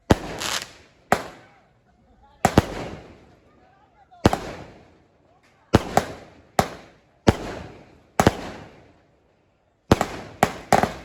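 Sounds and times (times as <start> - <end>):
firework bangs crackling: 0.0 - 1.6, 2.4 - 3.4, 4.2 - 5.0, 5.7 - 9.0, 9.9 - 11.0.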